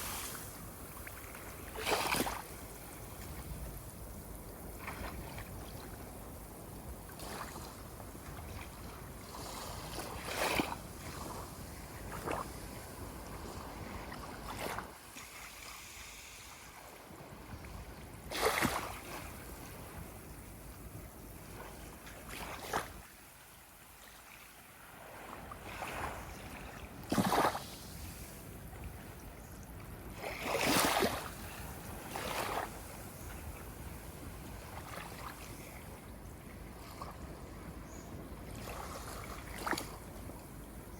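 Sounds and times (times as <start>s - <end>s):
ocean waves washing: 0.0s - 6.0s
waves splashing: 0.0s - 40.9s.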